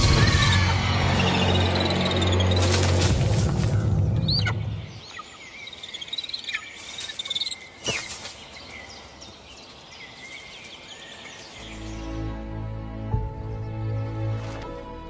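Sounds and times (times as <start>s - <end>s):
small birds chirping: 0.0s - 12.4s
insects: 0.1s - 11.9s.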